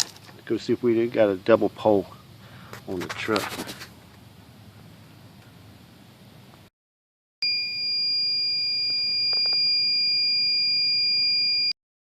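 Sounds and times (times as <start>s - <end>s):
high-pitched electronic beep: 7.4s - 11.8s.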